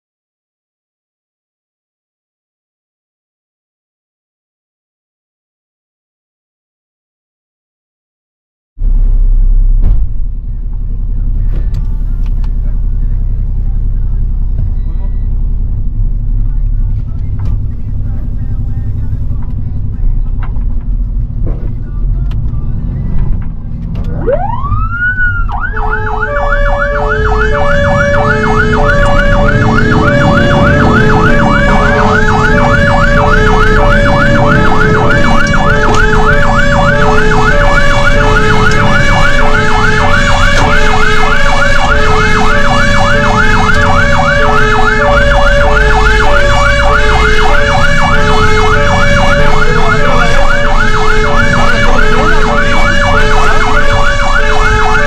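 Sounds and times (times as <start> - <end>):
truck engine rumble: 8.8 - 55.0
siren yelping: 24.1 - 55.0
two-tone hi-lo siren: 24.1 - 55.0.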